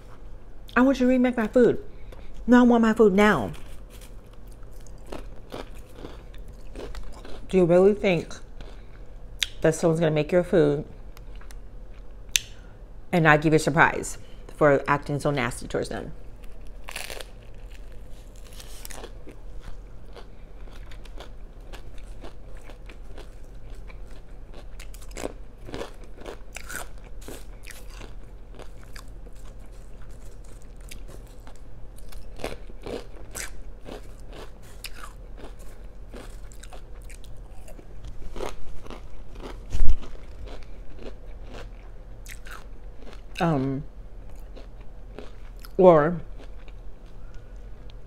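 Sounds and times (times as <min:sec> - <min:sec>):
crunching and chewing food: 0:03.4 - 0:09.6, 0:11.0 - 0:12.6, 0:16.2 - 0:48.0.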